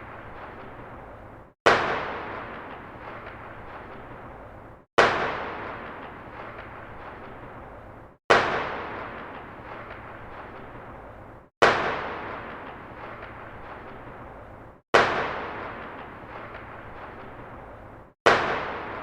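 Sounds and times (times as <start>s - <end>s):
echoing gunshot: 1.7s - 4.4s, 5.0s - 7.6s, 8.3s - 11.0s, 11.6s - 13.0s, 15.0s - 16.3s, 18.3s - 19.0s.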